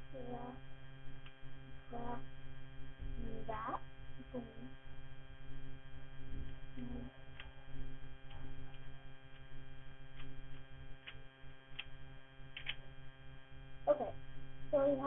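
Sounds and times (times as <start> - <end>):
electrical hum: 0.0 - 15.0
rubik's cube clicks: 12.6 - 12.8.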